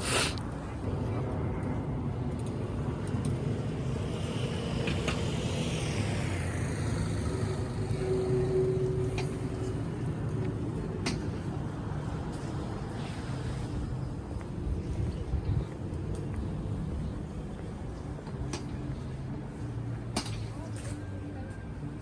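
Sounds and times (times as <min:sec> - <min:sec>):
road traffic noise: 0:00.0 - 0:22.0
vehicle passing: 0:03.6 - 0:14.9.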